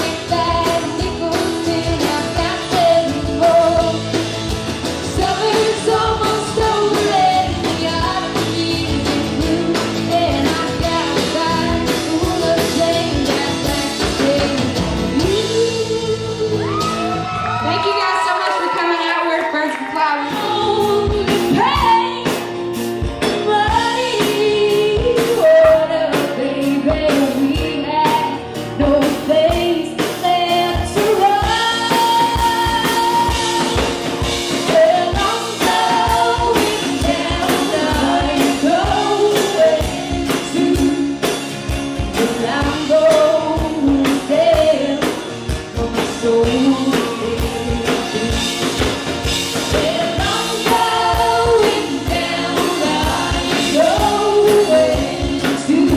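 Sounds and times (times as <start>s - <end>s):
live band playing: 0.0s - 55.9s
people singing: 5.1s - 16.0s, 34.6s - 41.4s, 42.1s - 45.2s, 45.8s - 55.9s
drum beat: 45.8s - 55.9s.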